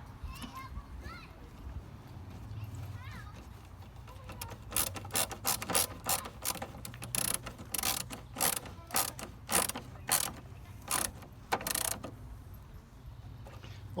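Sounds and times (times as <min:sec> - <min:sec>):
ratchet screwdriver ratcheting: 0:04.1 - 0:12.2.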